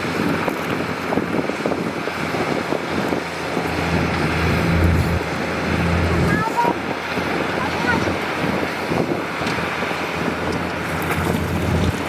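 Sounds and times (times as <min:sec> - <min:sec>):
heavy diesel engine running: 0:00.0 - 0:12.0
steady rushing noise: 0:01.2 - 0:10.0.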